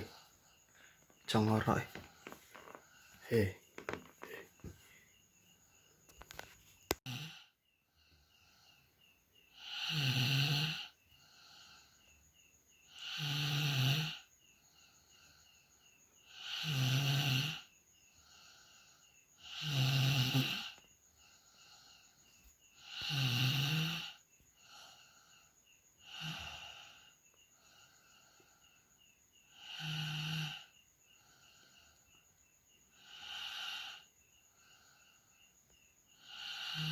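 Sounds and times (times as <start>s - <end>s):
quiet breaths: 0.0s - 36.9s
person snoring loudly: 7.0s - 7.5s, 9.6s - 11.5s, 12.9s - 14.3s, 16.3s - 17.7s, 19.4s - 20.8s, 22.8s - 24.9s, 26.0s - 27.0s, 29.5s - 30.7s, 33.0s - 34.0s, 36.2s - 36.9s.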